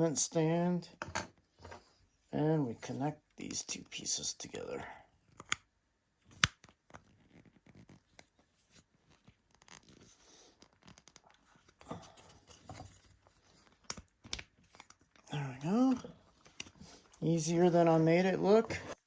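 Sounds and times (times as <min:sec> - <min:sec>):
plastic scraping and rustling: 0:06.6 - 0:19.0
plastic parts clicking together: 0:13.6 - 0:15.3.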